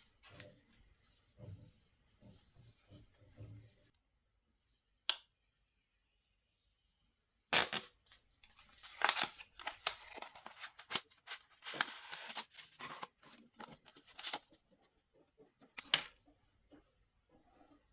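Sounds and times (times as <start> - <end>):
packaging rustling and clicking: 8.5 - 14.6.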